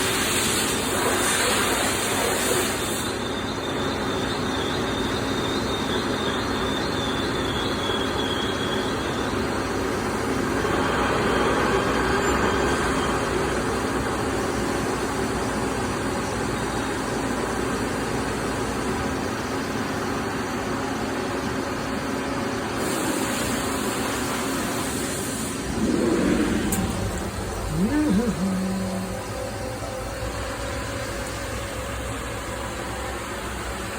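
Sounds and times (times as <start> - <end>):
rising and falling pitched sound: 25.6 - 29.4.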